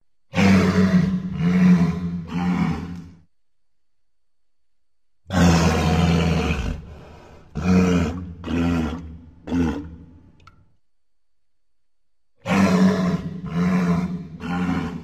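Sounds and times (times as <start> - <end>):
deep dinosaur roars: 0.3 - 3.2, 5.3 - 6.9, 7.5 - 10.1, 12.4 - 15.0.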